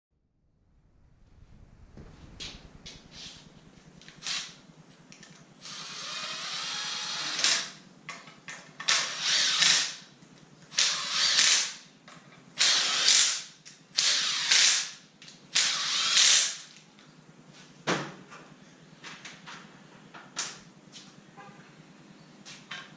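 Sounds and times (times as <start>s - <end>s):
power tool working in bursts: 5.6s - 7.8s, 8.9s - 10.0s, 10.7s - 11.8s, 12.6s - 16.7s.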